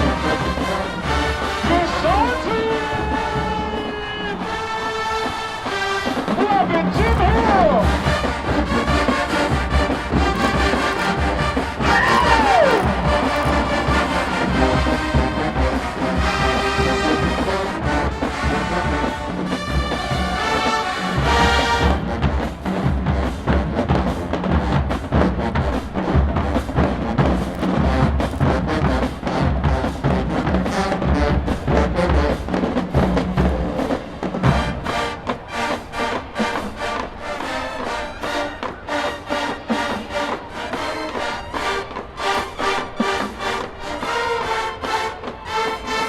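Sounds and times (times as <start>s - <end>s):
brass sustained chords: 0.0s - 12.2s, 12.8s - 24.8s
marching band playing: 0.0s - 46.0s.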